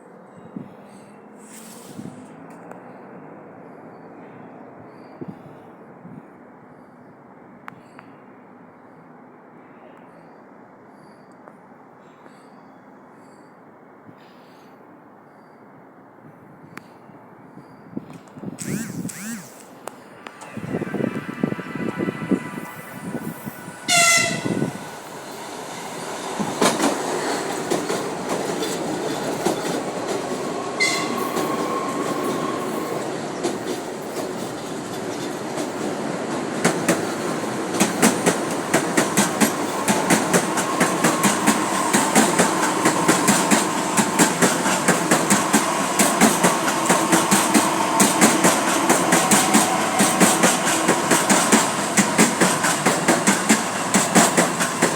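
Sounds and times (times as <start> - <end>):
train rumble: 17.6 - 54.9
train horn blast: 20.4 - 24.8, 30.8 - 32.7
wheels clacking over rail joints: 26.4 - 32.2, 33.0 - 54.9.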